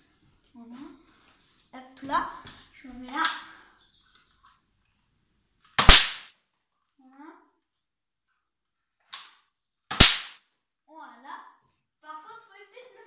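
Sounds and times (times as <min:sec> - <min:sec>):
bang snap cracking: 0:05.8 - 0:06.3, 0:09.1 - 0:10.4.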